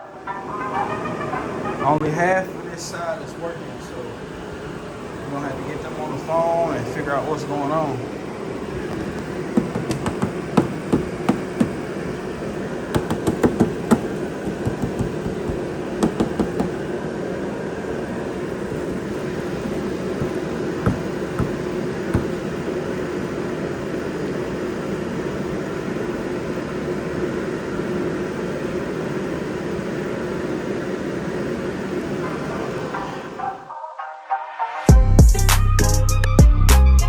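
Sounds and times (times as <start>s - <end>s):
steady background hum: 0.0s - 34.0s
hand tools clicking and knocking: 9.6s - 11.8s, 13.0s - 16.8s, 20.2s - 22.4s.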